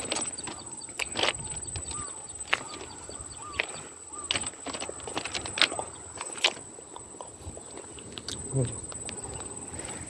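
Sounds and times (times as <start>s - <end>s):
footsteps through dry vegetation: 0.0s - 6.7s
faint chirps: 0.0s - 10.0s
insects buzzing: 0.0s - 10.0s.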